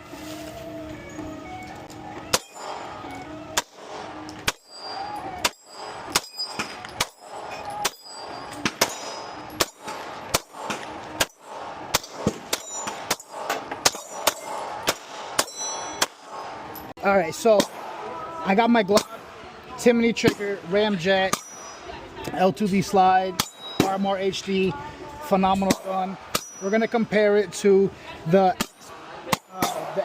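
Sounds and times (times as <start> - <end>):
pistol shots: 2.3 - 18.1, 28.6 - 30.0
short high ring: 4.5 - 9.9.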